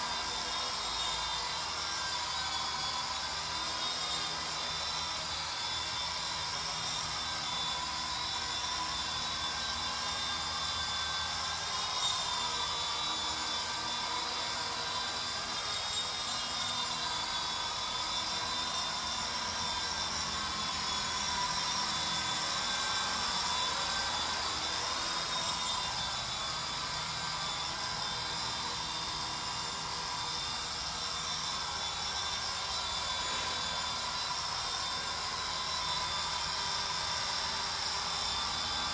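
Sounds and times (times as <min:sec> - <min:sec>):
toy helicopter motor whine: 0:00.0 - 0:38.9.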